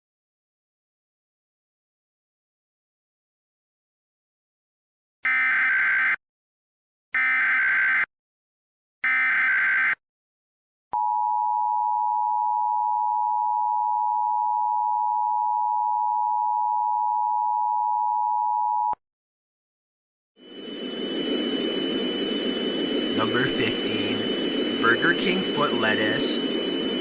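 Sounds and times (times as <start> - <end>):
digital header tone bursts: 22.8 - 27.0.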